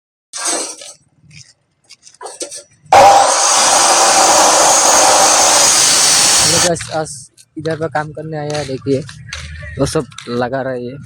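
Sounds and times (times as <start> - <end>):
power tool grinding: 0.4 - 0.9, 2.3 - 6.7
short scrapes and knocks: 0.4 - 3.2.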